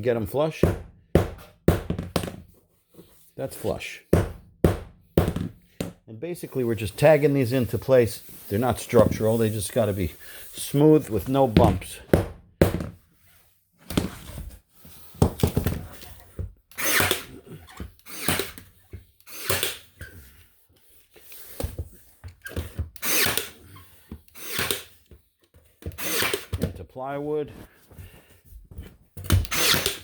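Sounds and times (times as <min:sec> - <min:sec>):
stapler firing into wood: 0:29.3 - 0:30.0.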